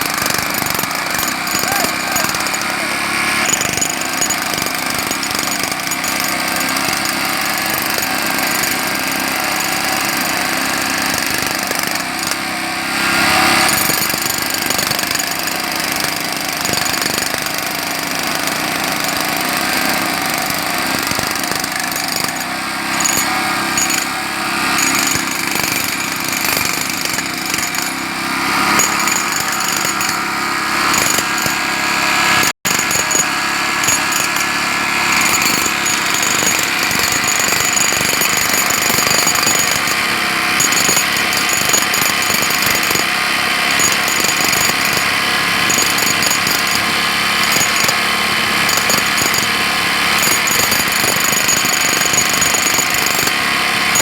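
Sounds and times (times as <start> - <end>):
jackhammer hammering: 0.0 - 54.0.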